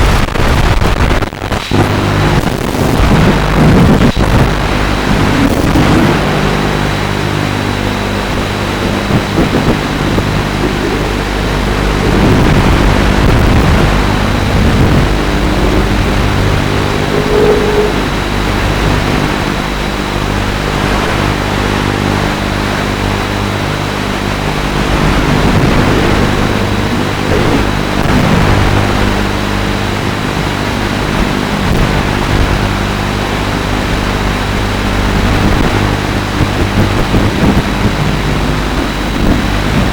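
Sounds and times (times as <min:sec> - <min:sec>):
drone motors and propellers: 0:01.7 - 0:39.9
wind rush: 0:07.5 - 0:34.0.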